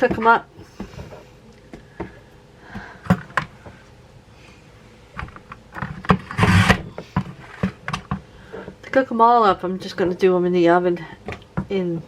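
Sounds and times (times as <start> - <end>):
potato cutter grinding: 6.0 - 6.9.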